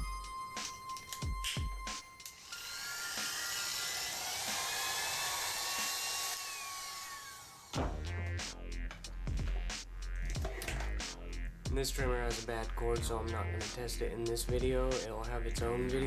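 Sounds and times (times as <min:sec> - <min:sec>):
small electric motor whining: 0:00.0 - 0:07.8.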